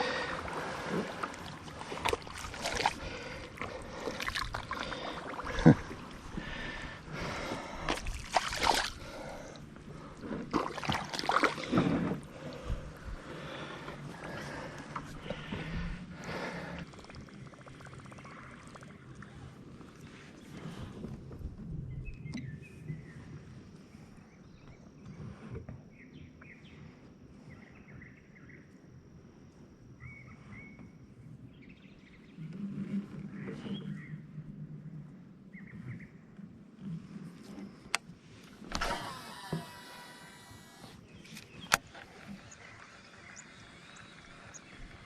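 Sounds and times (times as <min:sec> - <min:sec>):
water sloshing and splashing: 0:00.0 - 0:21.5
birds chirping: 0:38.9 - 0:45.0.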